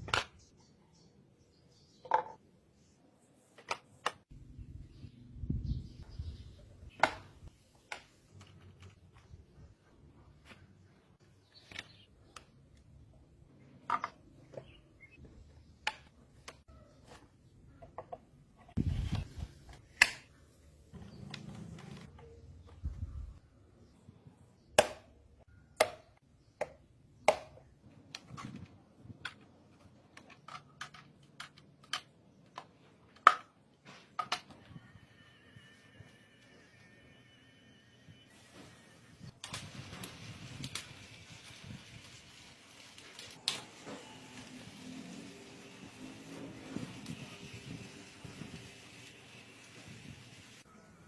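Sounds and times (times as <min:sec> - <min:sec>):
plastic parts clicking together: 0:25.8 - 0:33.6.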